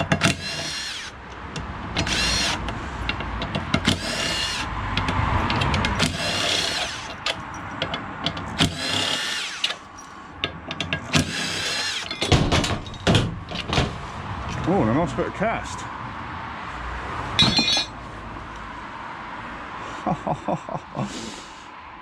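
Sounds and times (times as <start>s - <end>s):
power drill whining: 0.2s - 1.2s, 2.0s - 2.7s, 3.8s - 4.7s, 5.7s - 7.4s, 8.6s - 10.1s, 11.2s - 12.2s
scrap metal clattering: 17.4s - 18.0s.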